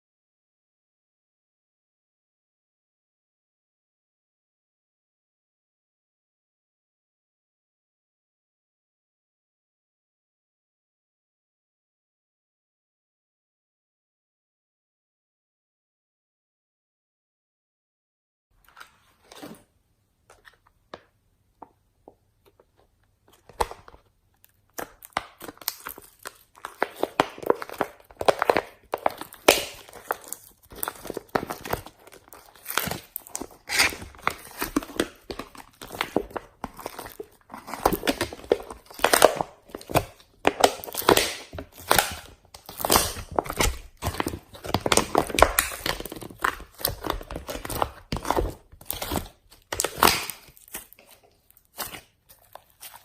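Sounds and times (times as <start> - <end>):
slime crackling and popping: 23.4 - 53.0.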